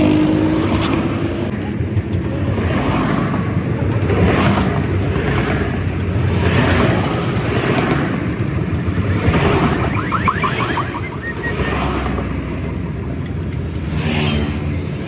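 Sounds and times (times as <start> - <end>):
vehicle engine running: 7.7 - 13.8
quick high chirps: 9.2 - 12.1.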